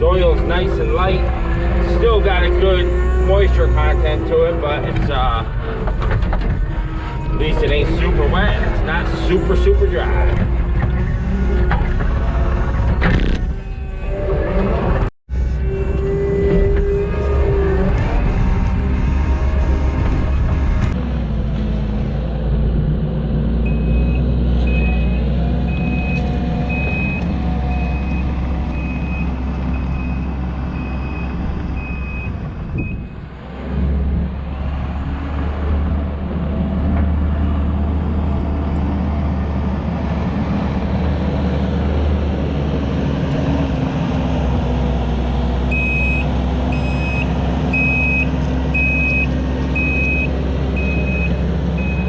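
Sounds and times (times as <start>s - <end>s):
diesel loader engine running: 0.0s - 52.0s
backup alarm beeping: 23.7s - 33.0s, 45.7s - 52.0s.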